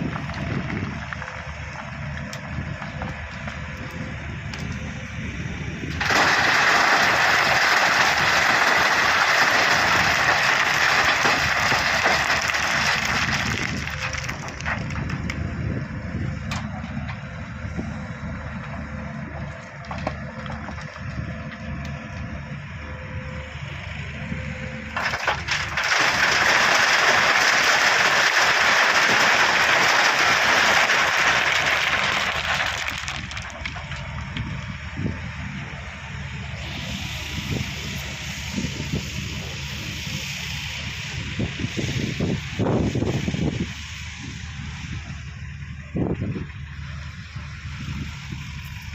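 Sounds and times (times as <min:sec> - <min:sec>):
gravel rattling and pouring: 0:00.0 - 0:03.8, 0:05.9 - 0:15.5, 0:25.0 - 0:34.9
diesel engine running under load: 0:00.0 - 0:48.9.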